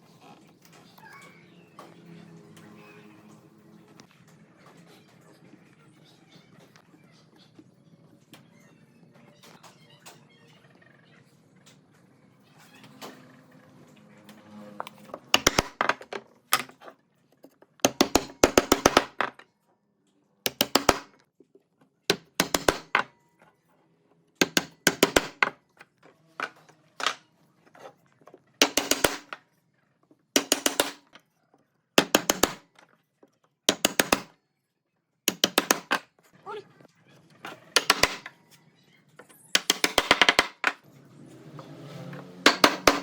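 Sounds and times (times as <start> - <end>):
rapid sharp knocks: 15.3 - 16.0, 20.5 - 21.1, 22.1 - 23.1, 24.4 - 25.5, 28.6 - 29.3, 30.4 - 31.0, 32.0 - 32.6, 33.7 - 34.3, 35.3 - 36.0, 42.5 - 43.0.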